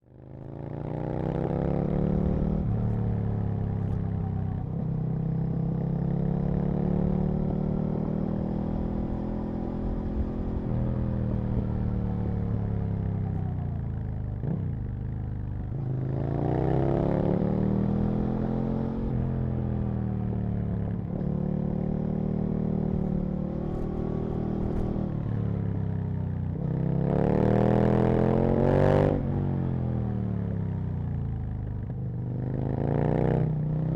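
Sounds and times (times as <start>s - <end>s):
motorcycle engine revving: 14.4s - 30.6s.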